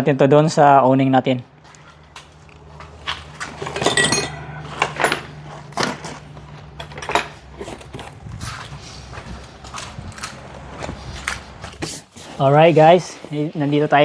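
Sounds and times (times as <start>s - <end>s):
faint steady hum: 0.0s - 14.0s
metal hardware clinking: 1.7s - 8.2s
short metallic ring: 3.6s - 5.6s.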